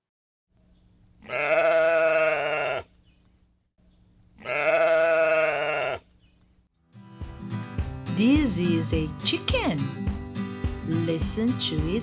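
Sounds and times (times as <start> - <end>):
sheep bleating: 1.2 - 2.9, 4.4 - 6.1.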